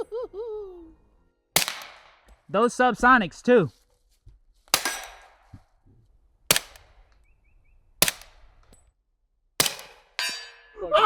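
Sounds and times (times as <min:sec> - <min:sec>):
suppressed pistol shots: 0:01.6 - 0:02.5, 0:04.7 - 0:05.6, 0:06.5 - 0:07.3, 0:08.0 - 0:08.8, 0:09.6 - 0:10.2.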